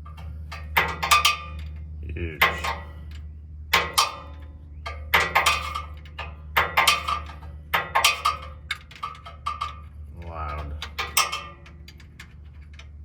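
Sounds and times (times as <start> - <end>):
steady low hum: 0.0 - 13.0
metal tools clinking: 10.5 - 12.9.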